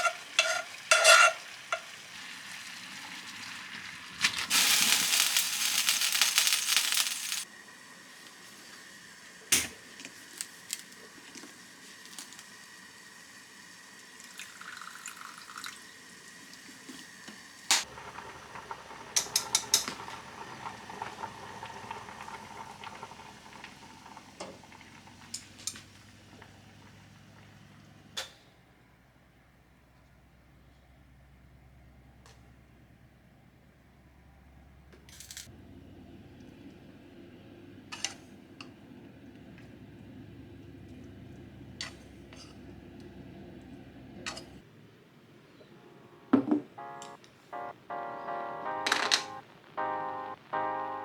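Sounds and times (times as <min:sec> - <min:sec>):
water running from a tap: 0:01.6 - 0:07.5, 0:08.3 - 0:16.9, 0:17.8 - 0:27.5.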